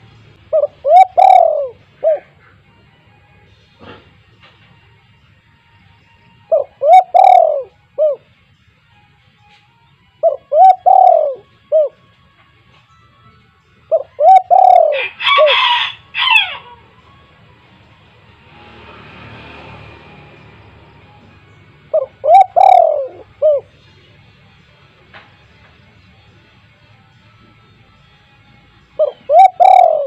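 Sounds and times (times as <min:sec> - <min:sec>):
dove cooing: 0:00.4 - 0:02.7, 0:06.4 - 0:08.3, 0:10.2 - 0:12.0, 0:13.9 - 0:16.9, 0:21.9 - 0:24.2, 0:29.0 - 0:30.0.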